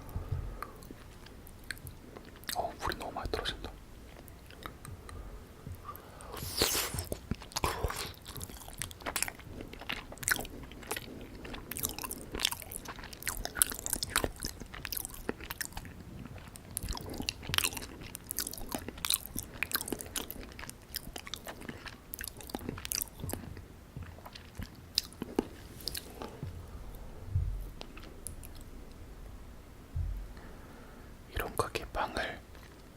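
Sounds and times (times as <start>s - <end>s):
wet chewing and smacking: 0.0s - 29.2s, 31.4s - 32.9s.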